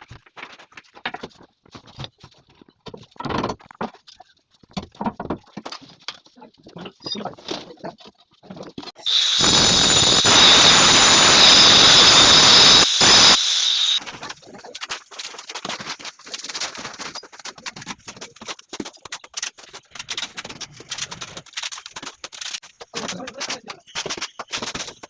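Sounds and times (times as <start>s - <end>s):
angle grinder on stone: 9.0s - 14.0s.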